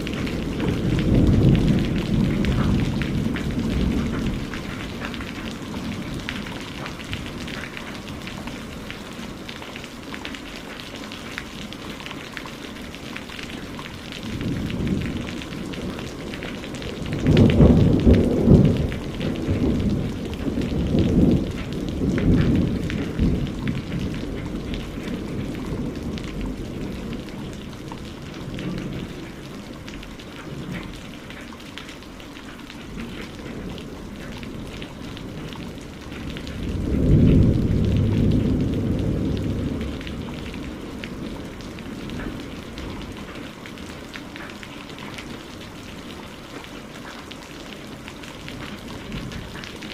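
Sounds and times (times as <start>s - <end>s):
thunder rumbling: 0.0s - 9.5s, 12.7s - 31.3s, 32.8s - 43.6s
rain falling: 0.0s - 49.9s.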